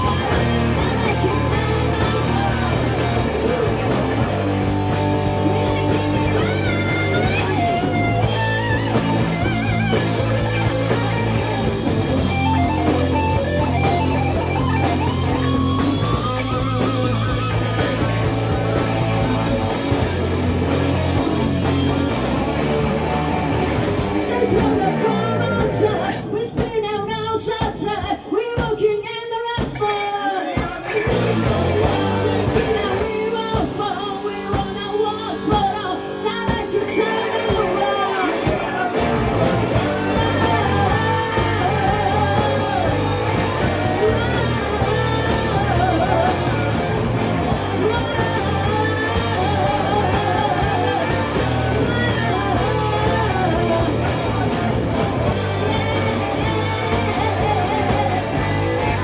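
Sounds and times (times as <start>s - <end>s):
electric guitar: 0.0s - 28.7s, 30.6s - 59.0s
live rock band playing: 0.0s - 28.8s, 30.6s - 59.0s
person singing: 21.0s - 59.0s.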